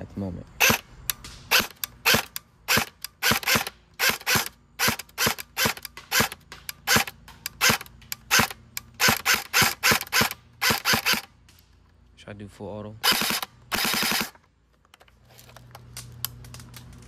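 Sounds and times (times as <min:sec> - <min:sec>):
airsoft gun shots: 0:00.6 - 0:11.3, 0:13.0 - 0:14.4.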